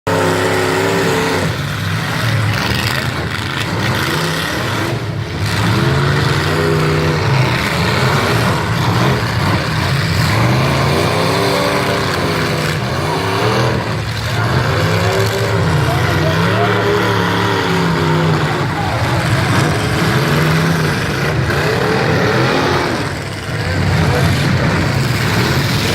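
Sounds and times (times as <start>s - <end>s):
car engines revving: 0.0s - 25.9s.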